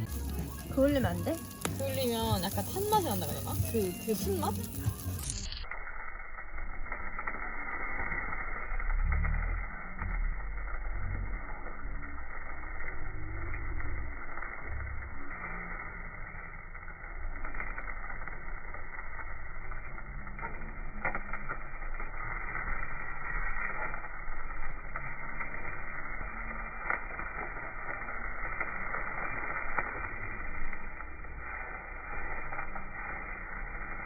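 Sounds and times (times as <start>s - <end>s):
meat sizzling on a grill: 0.0s - 34.0s
wood fire crackling: 0.0s - 34.0s.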